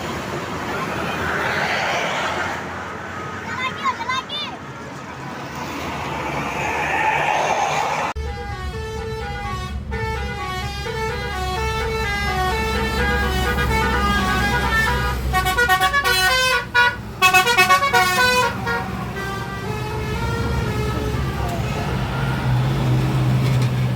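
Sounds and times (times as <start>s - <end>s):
bus engine running: 7.8s - 23.9s
bus horn playing tune: 8.2s - 23.8s.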